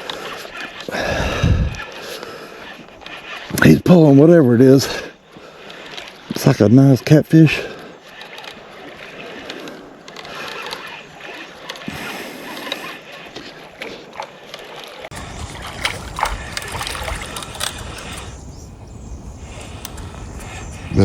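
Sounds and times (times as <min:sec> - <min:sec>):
water splashing and sloshing: 0:07.7 - 0:21.0.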